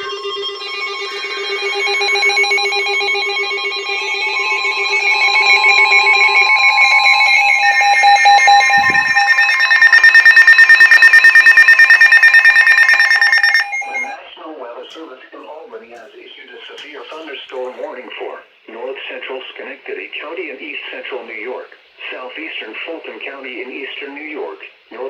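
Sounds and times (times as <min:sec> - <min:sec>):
emergency alert tones: 0:00.0 - 0:14.2
fast pulsing alarm: 0:00.0 - 0:14.2.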